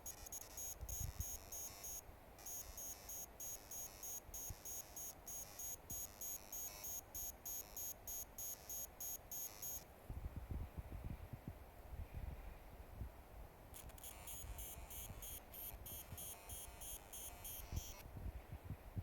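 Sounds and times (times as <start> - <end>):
high-pitched electronic buzz stuttering: 0.0 - 9.8, 13.8 - 18.0.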